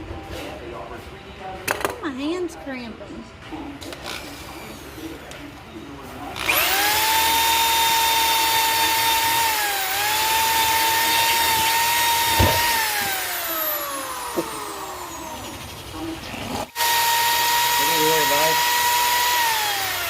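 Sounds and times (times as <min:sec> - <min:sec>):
electric drill whining: 0:06.4 - 0:15.8, 0:16.5 - 0:20.0
sharp knocks: 0:12.3 - 0:13.2.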